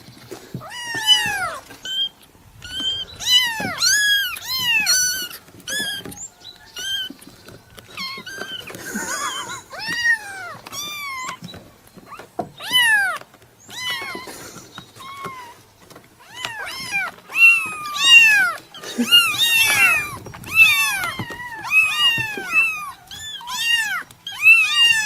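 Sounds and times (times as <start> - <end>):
kitten meowing: 0.6 - 6.2, 12.1 - 14.3, 16.2 - 25.0.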